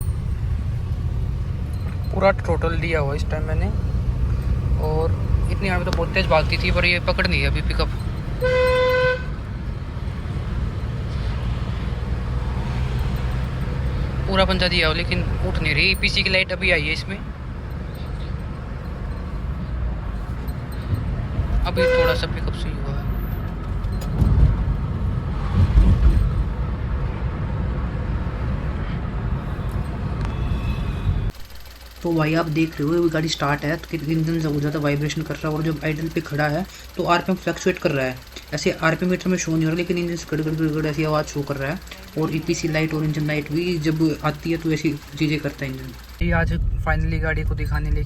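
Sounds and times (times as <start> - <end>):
car driving rumble: 0.0 - 48.0
car horn: 5.9 - 15.9, 21.6 - 23.5, 28.5 - 31.6.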